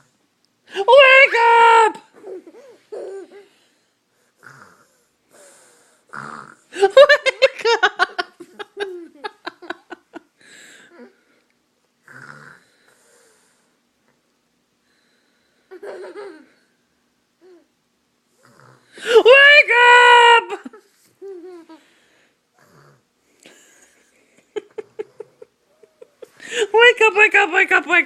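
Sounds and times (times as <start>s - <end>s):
fake snoring breaths: 4.2s - 6.7s
person giggling: 6.7s - 10.3s, 15.7s - 16.5s, 23.5s - 26.8s.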